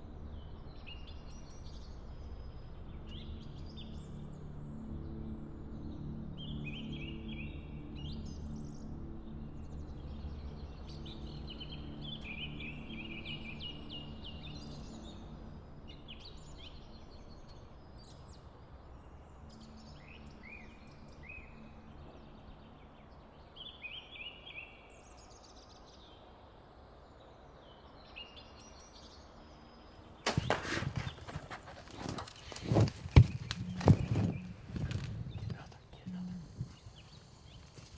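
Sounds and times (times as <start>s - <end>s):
low background music: 0.0s - 37.8s
songbirds chirping and singing: 0.0s - 37.9s
sharp knocks and crashing: 30.2s - 34.4s.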